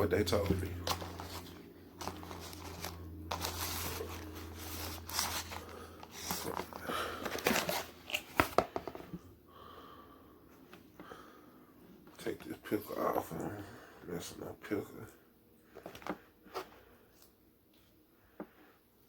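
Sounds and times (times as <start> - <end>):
paper packaging crinkling: 0.7 - 8.8.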